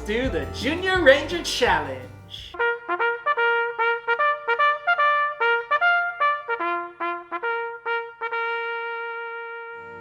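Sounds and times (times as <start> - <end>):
trumpet fanfare jingle: 0.0 - 10.0.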